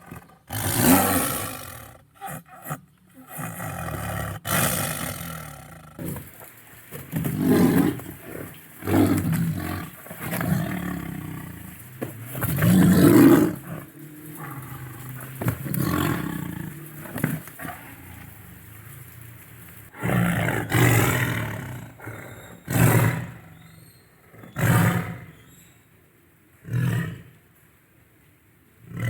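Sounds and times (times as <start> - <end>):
tiger roaring: 0.0 - 6.4, 7.0 - 19.0, 19.9 - 23.6, 24.2 - 25.4.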